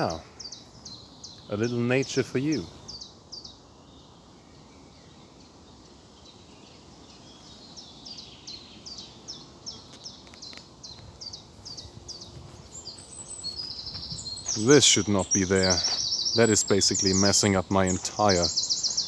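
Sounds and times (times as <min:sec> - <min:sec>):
faint woodland background: 0:00.0 - 0:19.0
songbird singing high notes: 0:11.2 - 0:19.0.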